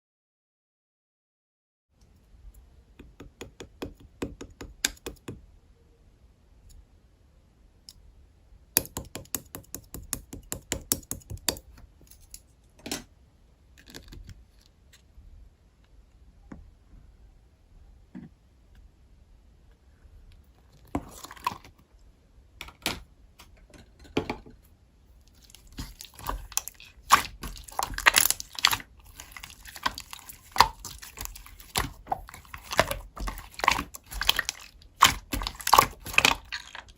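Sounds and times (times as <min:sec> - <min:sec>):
hands squishing slime: 0:20.8 - 0:21.8, 0:25.2 - 0:36.9.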